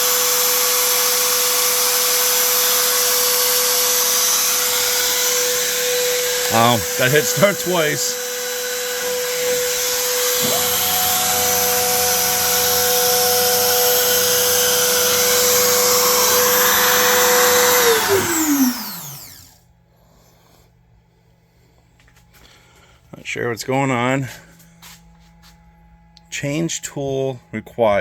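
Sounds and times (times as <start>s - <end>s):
router spindle whining: 0.0s - 19.6s.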